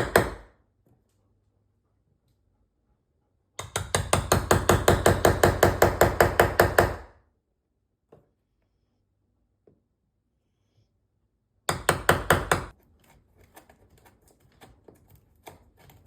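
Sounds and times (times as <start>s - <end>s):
hammer striking chisel into wood: 0.0s - 0.5s, 3.6s - 7.1s, 11.7s - 12.7s.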